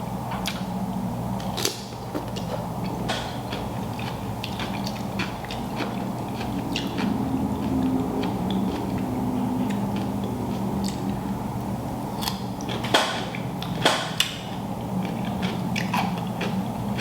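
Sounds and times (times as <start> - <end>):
chewing and mouth smacking: 1.4 - 11.2, 12.2 - 13.0, 14.8 - 17.0.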